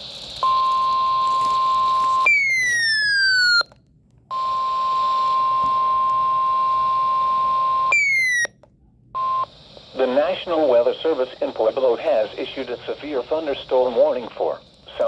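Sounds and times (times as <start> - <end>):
steady high alert beep: 5.5 - 8.5.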